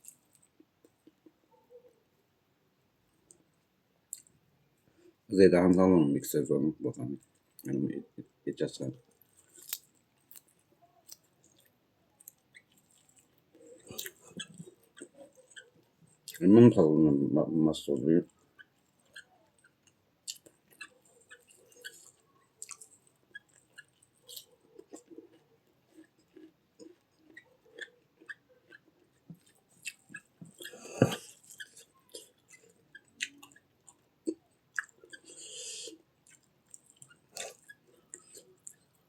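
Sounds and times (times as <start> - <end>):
person chewing: 4.1 - 4.3, 9.0 - 16.4, 18.2 - 39.0.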